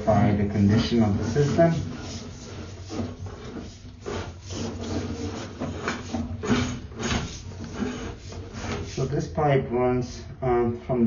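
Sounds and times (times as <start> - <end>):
cable rubbing and scraping: 0.0 - 9.3.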